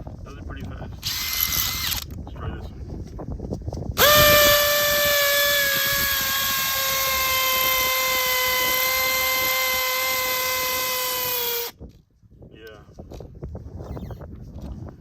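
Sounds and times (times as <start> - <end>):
hammer drill drilling into stone: 1.0 - 2.1, 4.0 - 11.7.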